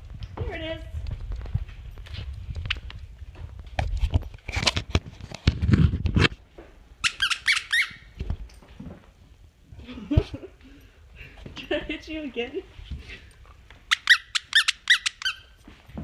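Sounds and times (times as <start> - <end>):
high squeaks: 7.0 - 8.1, 13.9 - 15.6.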